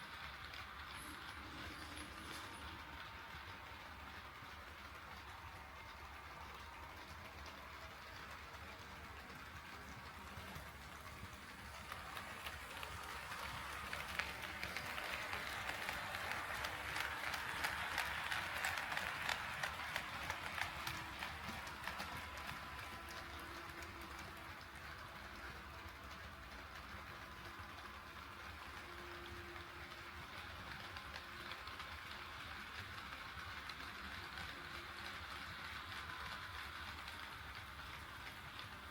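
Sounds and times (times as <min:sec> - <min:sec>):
model train rolling rumble: 0:00.0 - 0:38.9
wheels clicking over rail joints: 0:00.0 - 0:38.9.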